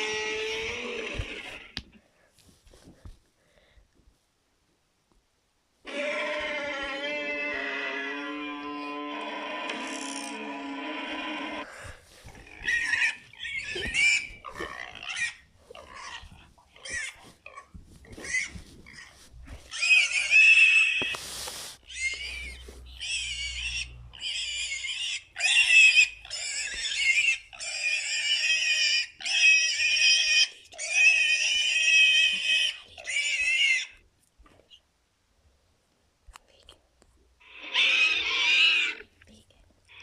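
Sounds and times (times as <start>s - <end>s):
monster roar shrieks: 0.0s - 1.7s, 5.9s - 11.7s.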